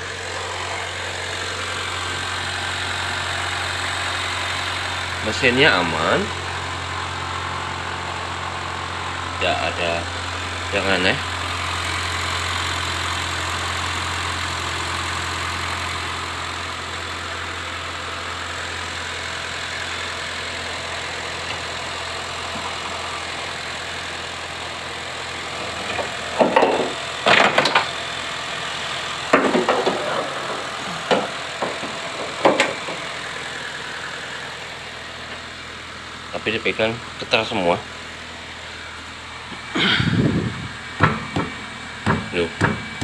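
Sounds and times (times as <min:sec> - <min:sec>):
car engine idling: 0:00.0 - 0:43.0
short sharp knocks: 0:41.0 - 0:43.0.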